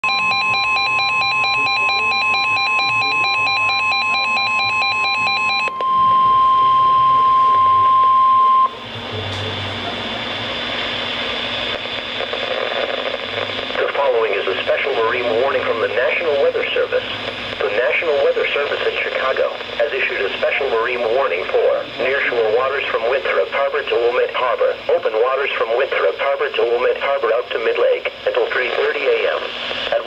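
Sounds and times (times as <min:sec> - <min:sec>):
steady warning alarm tone: 0:00.0 - 0:08.9
radio hiss: 0:09.7 - 0:30.0.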